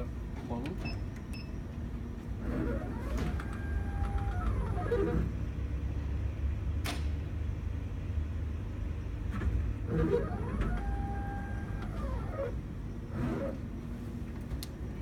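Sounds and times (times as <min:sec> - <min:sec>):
motor whine: 0:02.5 - 0:05.3, 0:09.8 - 0:13.6.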